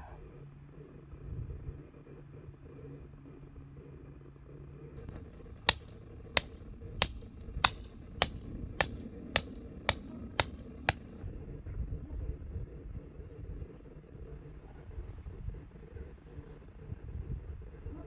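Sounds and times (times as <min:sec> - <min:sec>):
hammer striking metal tent stake: 0:05.1 - 0:11.2.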